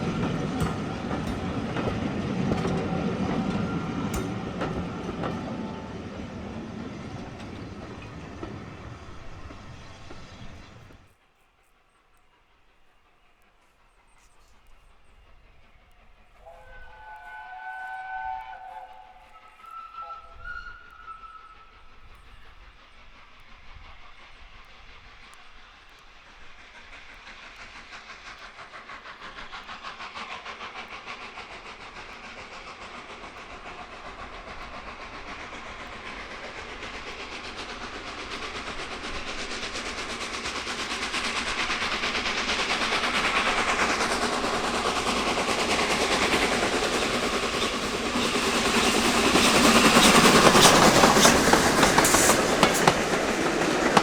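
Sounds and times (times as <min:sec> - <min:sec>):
steam locomotive whistle: 0:00.0 - 0:10.9, 0:16.4 - 0:22.6
train rumble and exhaust: 0:00.0 - 0:54.0.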